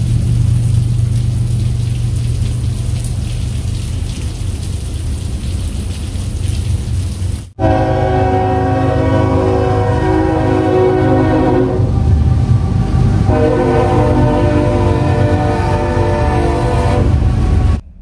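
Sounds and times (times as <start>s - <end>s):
low rumble: 0.0s - 6.9s, 9.6s - 18.0s
rain hiss: 0.0s - 17.8s
train air horn chord: 7.6s - 12.2s, 13.1s - 17.8s.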